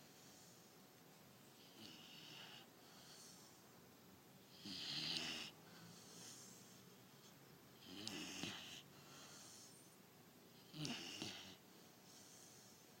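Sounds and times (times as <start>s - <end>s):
soft breaths: 0.0s - 13.0s
puppy snoring: 1.6s - 3.5s, 4.5s - 9.8s, 10.5s - 12.9s.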